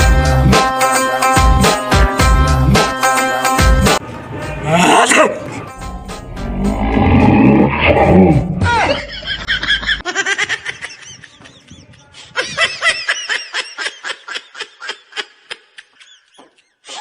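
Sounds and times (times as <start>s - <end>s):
person laughing: 8.8s - 17.0s.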